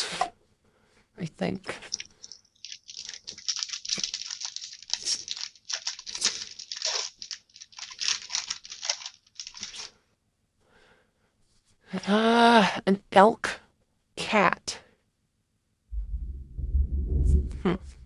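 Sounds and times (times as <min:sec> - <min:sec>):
foil wrapper crinkling and tearing: 0:01.9 - 0:09.9.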